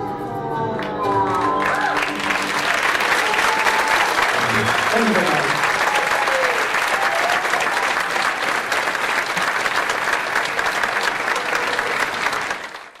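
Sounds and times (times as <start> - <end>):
audience applauding: 0.8 - 13.0
faint voices: 4.3 - 5.6.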